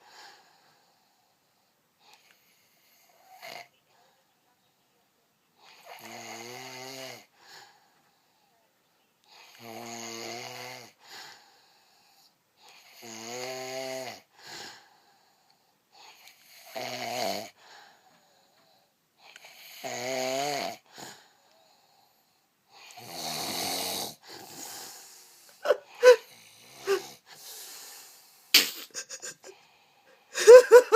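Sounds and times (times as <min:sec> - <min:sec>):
person snoring loudly: 0:19.7 - 0:20.8, 0:23.0 - 0:28.1.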